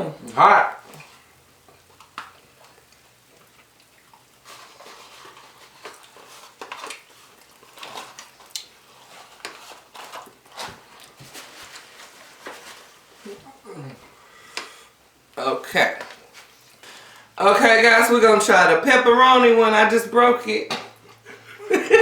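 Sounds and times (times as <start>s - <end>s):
chewing and mouth noises: 0.8s - 11.2s
food handling clicks and rustles: 0.8s - 14.8s, 15.9s - 17.4s.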